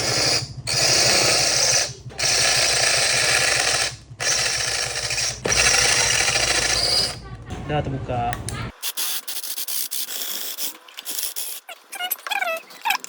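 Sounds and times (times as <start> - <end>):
power drill drilling rivets: 0.0 - 7.2.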